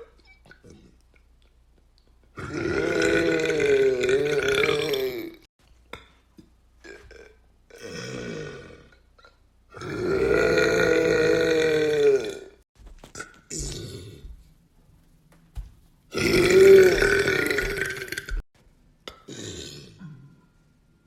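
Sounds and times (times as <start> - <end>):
man burping: 2.4 - 5.5, 9.7 - 12.6, 16.1 - 18.4.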